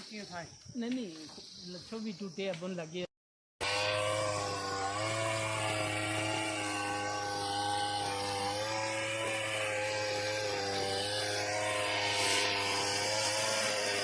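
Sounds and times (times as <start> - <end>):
chainsaw engine running: 3.6 - 14.0.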